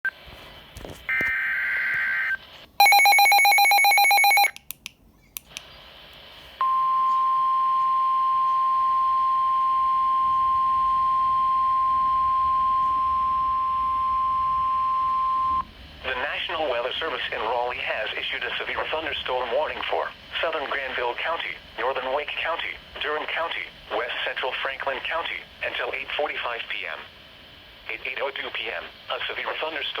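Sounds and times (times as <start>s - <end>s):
steady warning alarm tone: 1.1s - 4.6s, 6.6s - 15.7s.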